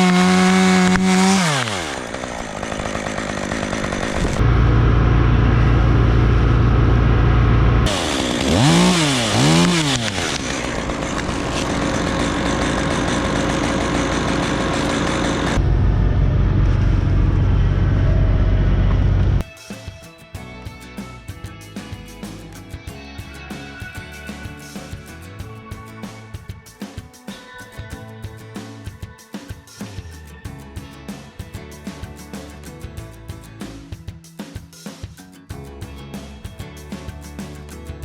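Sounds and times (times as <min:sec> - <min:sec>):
chainsaw engine revving: 0:00.0 - 0:19.4
steady low rumble: 0:04.2 - 0:07.9, 0:10.8 - 0:19.4.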